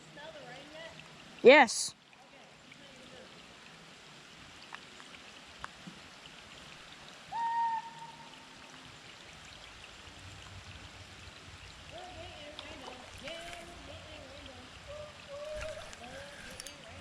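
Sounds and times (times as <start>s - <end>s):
faint steady hiss: 0.0s - 17.0s
whistled call: 7.3s - 8.5s.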